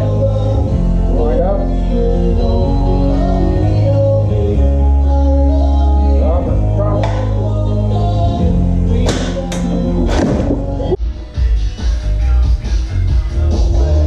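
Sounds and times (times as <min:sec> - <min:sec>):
song with guitar on radio: 0:00.0 - 0:14.0.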